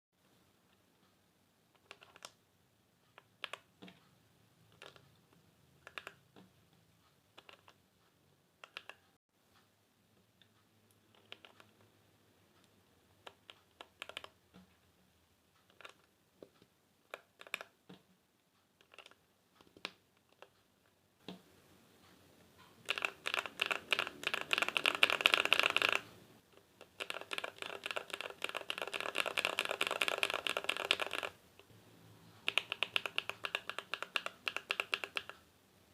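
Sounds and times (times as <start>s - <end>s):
fast typing on keyboard: 1.8s - 2.4s, 5.8s - 6.3s, 8.6s - 9.1s, 11.1s - 11.8s, 13.2s - 14.4s, 17.1s - 17.8s, 18.8s - 20.5s, 22.8s - 31.7s, 32.4s - 35.5s
mechanical keyboard key clacks: 22.8s - 26.1s, 26.9s - 31.3s, 32.4s - 35.4s.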